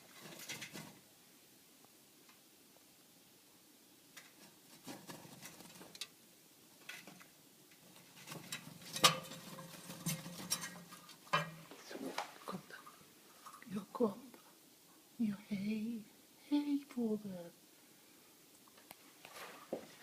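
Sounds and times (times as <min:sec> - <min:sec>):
bird scratching and scuffling: 0:00.0 - 0:01.0, 0:04.2 - 0:06.1, 0:06.8 - 0:12.4.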